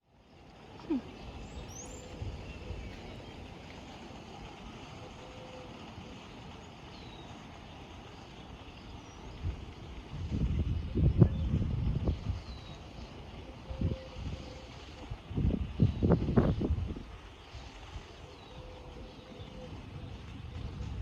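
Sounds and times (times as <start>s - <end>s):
low outdoor rumble: 0.1s - 21.0s.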